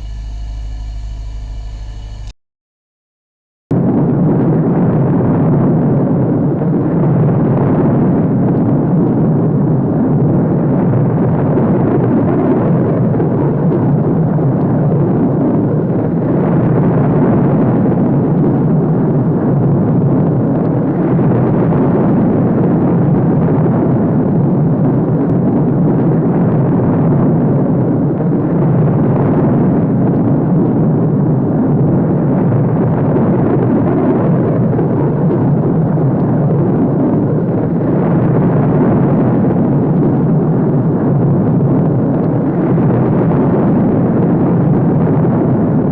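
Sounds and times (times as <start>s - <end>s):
low-pitched spaceship engine: 0.0s - 2.3s.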